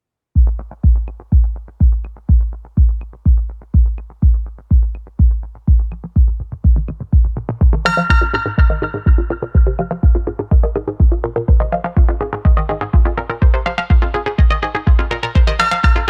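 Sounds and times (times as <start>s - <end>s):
hi-hat ticks: 0.4s - 12.3s
kick drum thudding: 0.4s - 16.0s.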